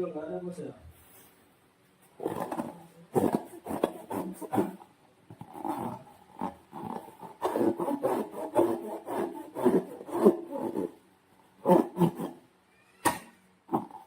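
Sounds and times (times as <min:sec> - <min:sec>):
rubbery rubbing squeaks: 0:02.2 - 0:11.0, 0:11.6 - 0:12.4, 0:13.0 - 0:14.0.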